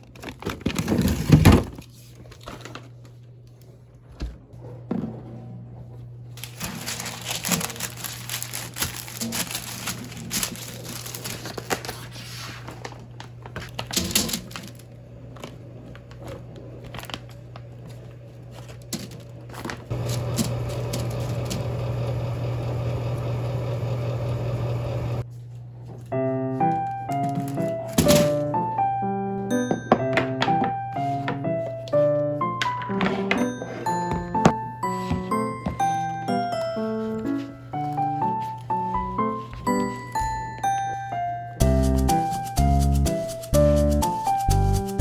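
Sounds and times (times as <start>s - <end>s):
plastic packaging crinkling: 6.4s - 21.6s
steady low hum: 14.6s - 26.1s.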